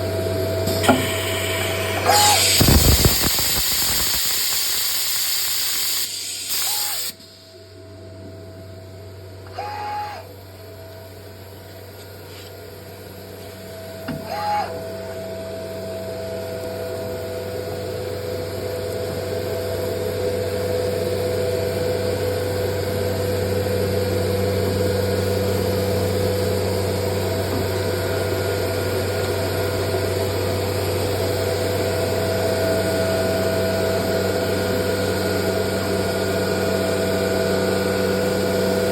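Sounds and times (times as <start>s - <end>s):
machine hum with whining tones: 0.0s - 38.9s
loud hiss: 0.7s - 7.2s.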